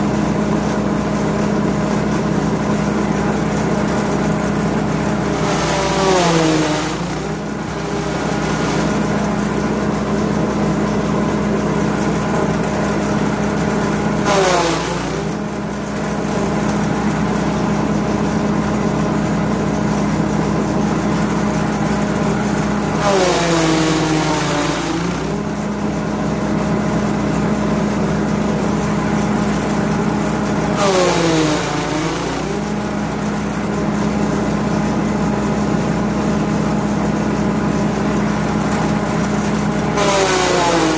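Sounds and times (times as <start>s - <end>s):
petrol engine running: 0.0s - 40.9s.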